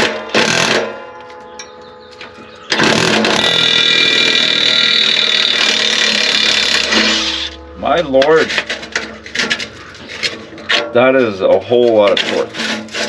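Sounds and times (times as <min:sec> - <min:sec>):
impact wrench running: 0:02.7 - 0:10.3.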